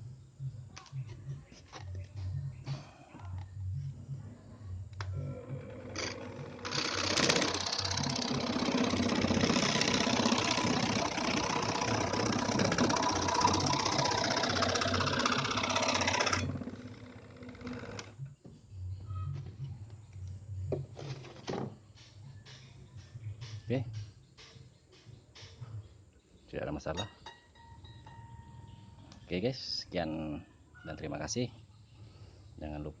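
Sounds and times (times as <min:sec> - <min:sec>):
electric scroll saw running: 0:05.2 - 0:18.2.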